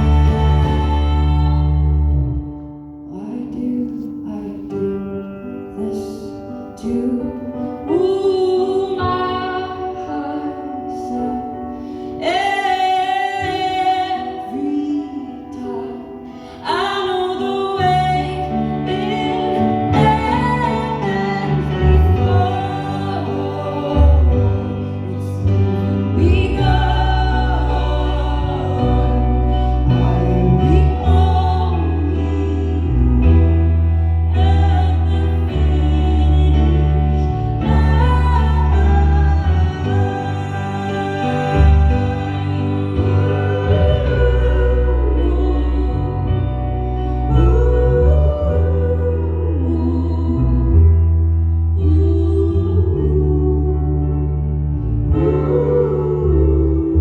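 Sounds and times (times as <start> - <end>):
low bass: 0.0 - 2.9, 17.8 - 57.0
woman singing slow melody: 0.0 - 57.0.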